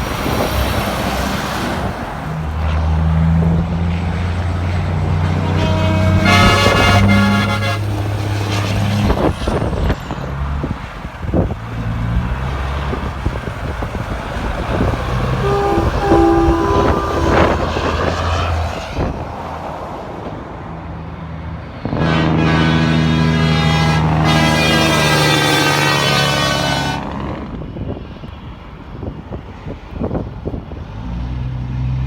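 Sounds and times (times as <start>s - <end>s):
heavy trucks passing: 0.0s - 32.0s
truck air horn chord: 5.2s - 7.9s, 15.3s - 18.6s, 22.0s - 27.0s
horn toot: 5.2s - 8.7s, 15.3s - 18.5s, 22.0s - 27.1s.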